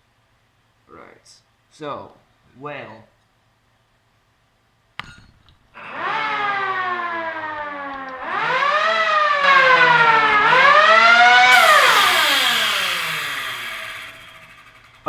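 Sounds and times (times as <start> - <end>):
siren wailing: 5.8 - 15.0.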